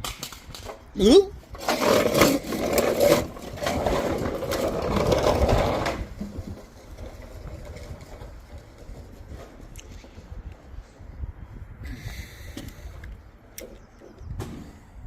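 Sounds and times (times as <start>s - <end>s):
toy car wheels rattling whir: 0.0s - 10.3s.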